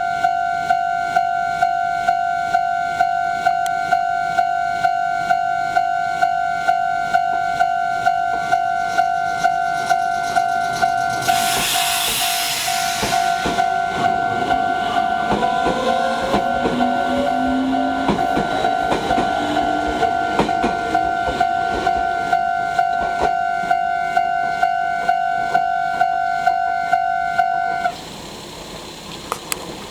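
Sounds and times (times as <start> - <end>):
train whine rising in pitch: 0.0 - 28.1
wheels clacking over rail joints: 5.2 - 28.1
hissing burst: 8.4 - 22.4
level crossing two-tone bell: 12.7 - 27.9.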